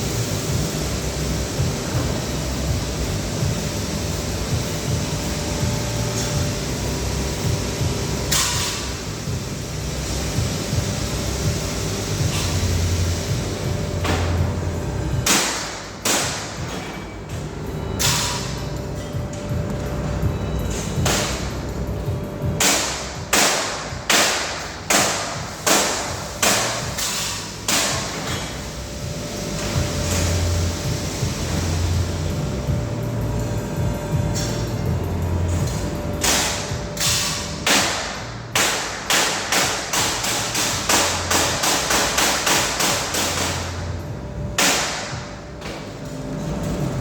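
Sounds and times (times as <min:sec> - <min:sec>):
hammer striking: 0:15.2 - 0:17.1, 0:22.6 - 0:28.6, 0:35.6 - 0:43.8, 0:44.6 - 0:45.8.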